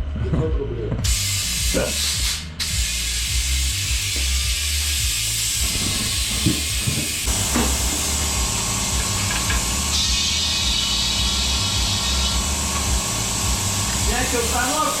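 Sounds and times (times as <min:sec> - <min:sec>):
low mechanical hum: 0:00.0 - 0:15.0
compressed air hissing: 0:01.0 - 0:15.0.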